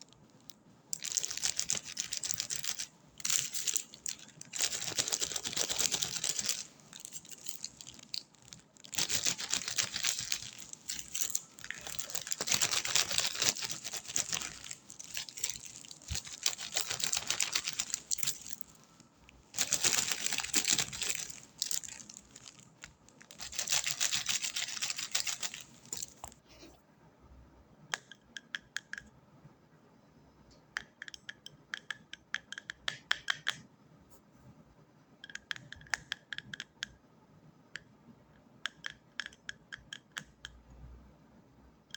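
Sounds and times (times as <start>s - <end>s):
scratching and crinkling: 0.0s - 26.4s.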